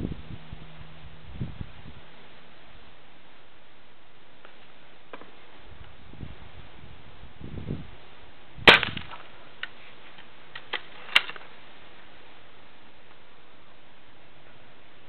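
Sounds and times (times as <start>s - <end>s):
air rifle firing: 8.7s - 9.2s.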